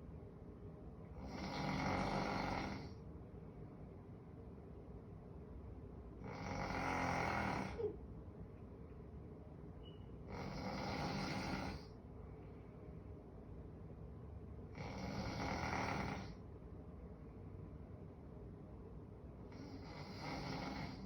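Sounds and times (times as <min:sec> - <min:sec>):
person snoring: 0:01.2 - 0:03.0, 0:06.2 - 0:07.9, 0:10.3 - 0:11.9, 0:14.8 - 0:16.4, 0:19.5 - 0:21.0.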